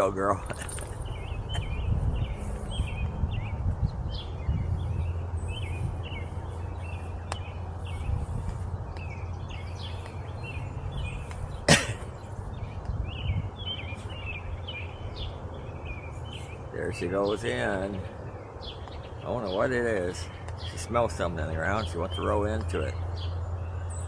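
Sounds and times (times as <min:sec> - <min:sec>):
steady low rumble: 0:00.0 - 0:23.5
small birds chirping: 0:00.0 - 0:24.0.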